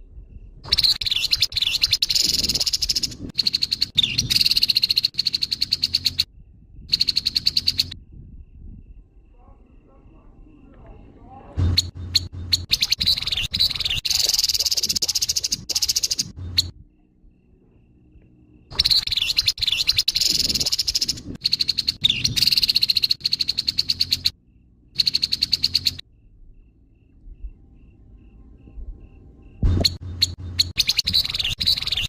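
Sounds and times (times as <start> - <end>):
bird rattling chatter calls: 0.7 - 6.3, 6.9 - 8.0, 11.7 - 16.7, 18.7 - 24.3.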